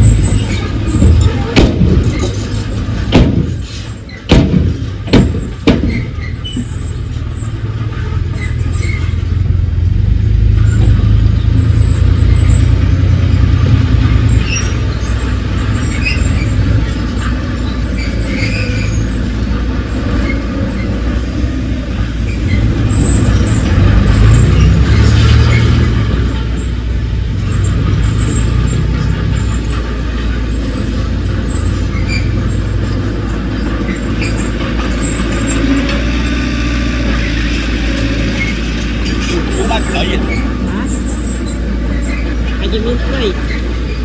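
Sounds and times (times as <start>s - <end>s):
heavy machine diesel engine: 0.0s - 44.0s
sharp knocks: 0.9s - 6.7s.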